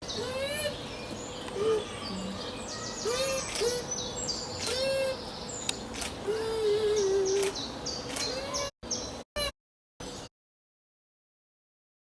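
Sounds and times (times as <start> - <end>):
high falling bird chirps: 0.0 - 6.1.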